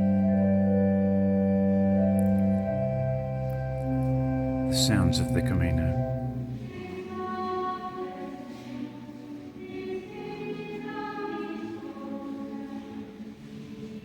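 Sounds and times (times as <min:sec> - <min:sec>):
choir singing long notes: 0:00.0 - 0:14.0.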